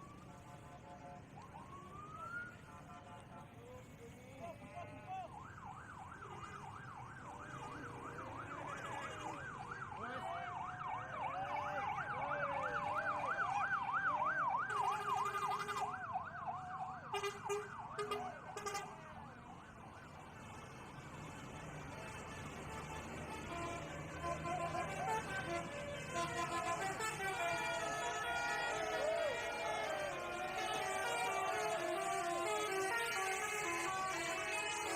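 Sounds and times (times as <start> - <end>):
bus horn warbling: 17.2 - 19.0, 21.9 - 34.9.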